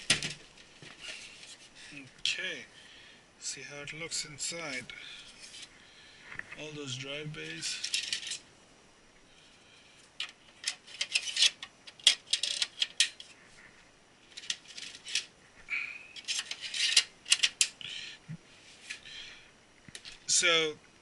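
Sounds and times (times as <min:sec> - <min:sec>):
metal and plastic parts clicking: 0:07.8 - 0:08.4, 0:10.2 - 0:13.3, 0:14.3 - 0:15.3, 0:16.2 - 0:17.8.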